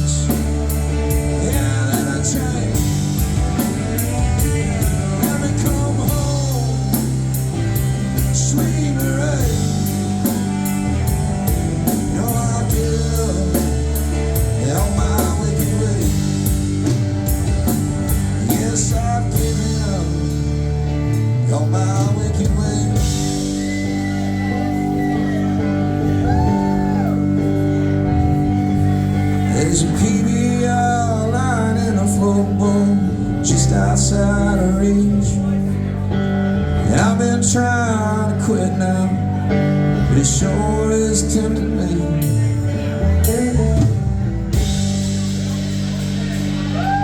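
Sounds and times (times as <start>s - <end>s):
drum kit with cymbal beat: 0.0s - 30.3s, 42.2s - 47.0s
bass guitar: 0.0s - 47.0s
electric guitar lead: 0.0s - 47.0s.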